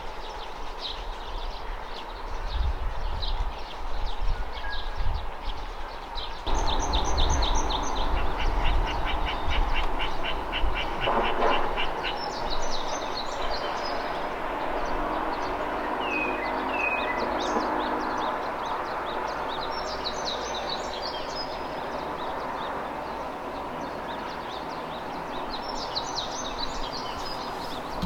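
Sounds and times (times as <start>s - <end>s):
low rumble: 6.5s - 11.1s
songbirds chirping and singing: 6.5s - 28.0s.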